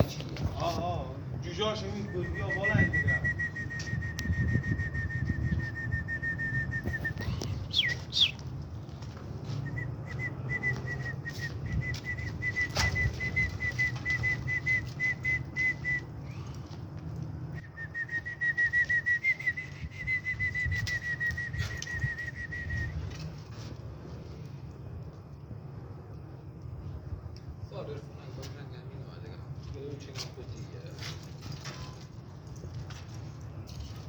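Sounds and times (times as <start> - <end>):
pigeons cooing and shuffling: 6.8 - 17.3
pigeons peeping rapidly: 6.9 - 8.6.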